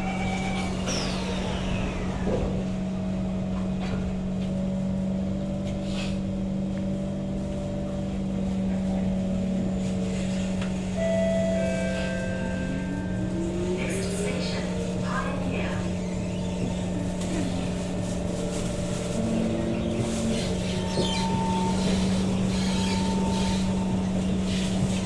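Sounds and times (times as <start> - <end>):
train electrical hum: 0.0 - 25.0
motor whine rising in pitch: 11.0 - 24.8.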